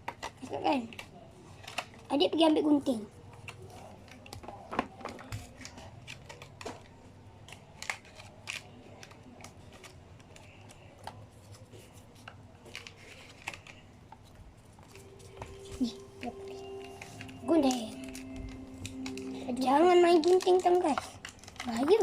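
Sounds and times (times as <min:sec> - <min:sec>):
plastic toys clicking and tapping: 0:00.0 - 0:02.2, 0:03.3 - 0:11.3, 0:17.2 - 0:22.0.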